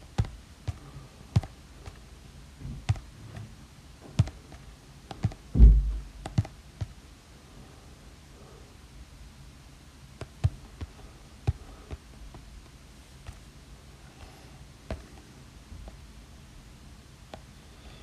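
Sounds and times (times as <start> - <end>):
dull thump: 5.5 - 6.4.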